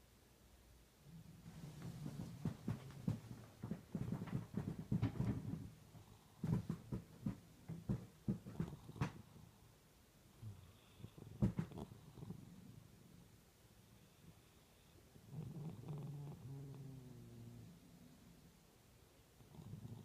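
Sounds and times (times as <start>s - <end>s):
cat snoring: 8.5s - 9.6s, 10.3s - 12.9s, 14.0s - 18.3s, 19.4s - 20.0s.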